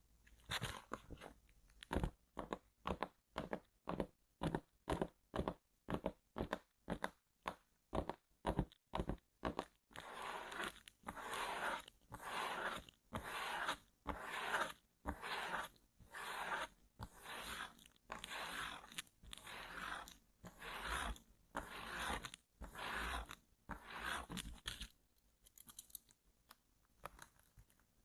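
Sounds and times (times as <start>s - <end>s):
fingers tapping on cardboard: 1.9s - 9.8s
scratching on cardboard: 9.5s - 24.9s.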